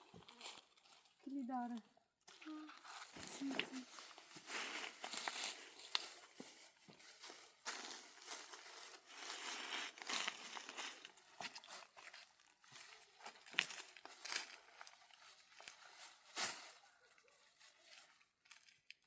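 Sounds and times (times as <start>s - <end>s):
rustling and crackling: 0.0s - 19.0s.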